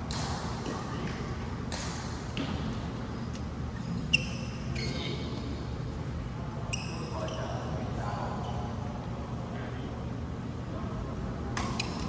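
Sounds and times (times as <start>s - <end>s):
shoes squeaking on court floor: 3.1s - 5.6s, 6.7s - 7.7s.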